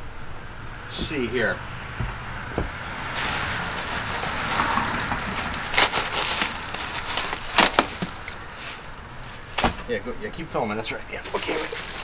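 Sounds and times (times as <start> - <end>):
packing cracking: 2.6 - 9.8, 11.2 - 12.0
packing material rustling: 3.1 - 9.8, 11.2 - 12.0.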